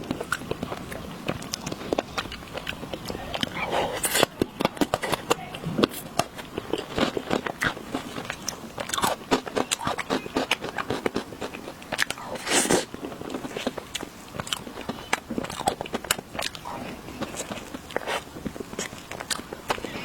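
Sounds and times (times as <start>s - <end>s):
crunchy biting and chewing: 0.0s - 20.0s.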